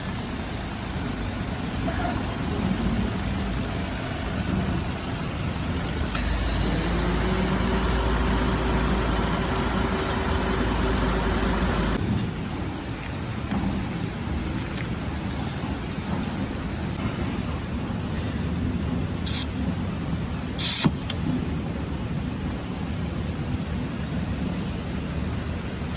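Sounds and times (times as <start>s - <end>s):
air conditioner rasping buzz: 0.0s - 12.0s
car engine idling: 0.0s - 12.0s
steady hum: 0.0s - 12.0s.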